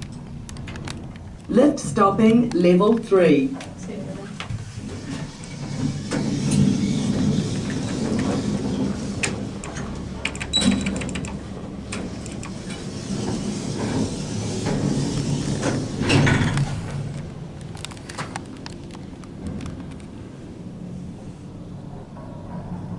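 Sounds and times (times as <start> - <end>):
lift car rumble and hiss: 3.6 - 22.9
lift door clicks and knocks: 5.5 - 12.8.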